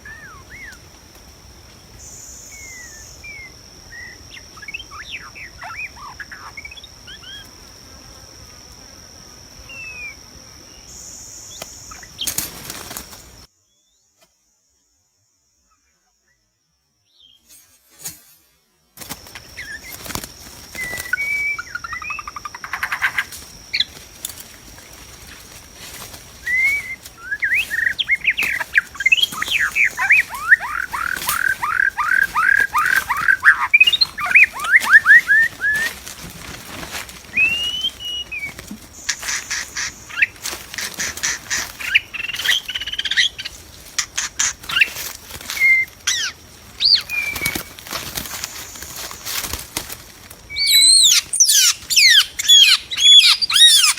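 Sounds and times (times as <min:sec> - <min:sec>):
bird whistling and chattering: 0:26.4 - 0:36.0, 0:37.3 - 0:45.0, 0:45.6 - 0:47.7, 0:50.5 - 0:53.9.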